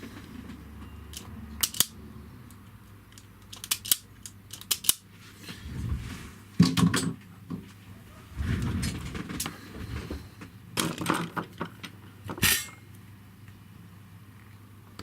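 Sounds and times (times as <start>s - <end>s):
wire cutters snipping cable: 1.1s - 2.0s, 3.1s - 5.0s.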